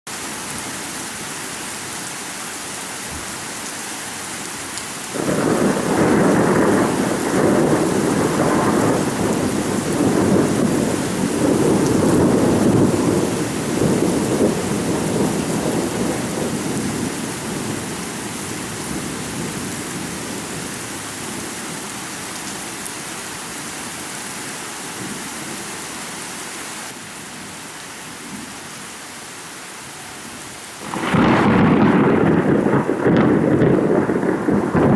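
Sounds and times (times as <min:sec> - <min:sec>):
steady rain hiss: 0:00.1 - 0:34.9
thunder rumbling: 0:05.2 - 0:21.0, 0:30.8 - 0:34.9.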